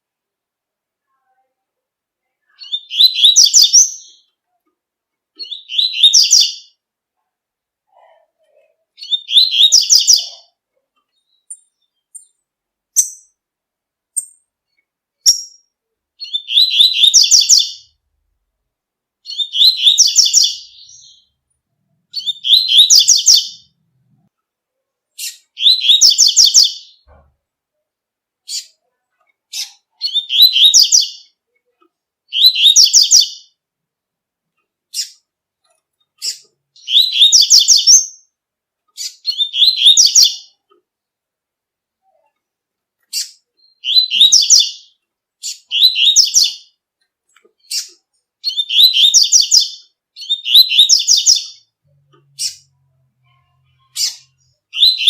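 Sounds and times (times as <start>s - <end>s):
bird warbling song: 5.4s - 6.8s, 9.0s - 12.4s, 19.2s - 21.4s, 22.1s - 23.8s, 25.2s - 27.3s, 29.5s - 31.4s, 32.3s - 33.5s, 36.2s - 38.3s, 43.1s - 46.7s, 47.6s - 52.8s.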